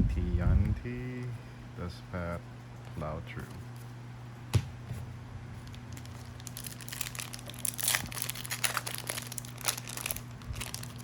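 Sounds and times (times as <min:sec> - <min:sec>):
wrapper crinkling: 0:05.6 - 0:11.0.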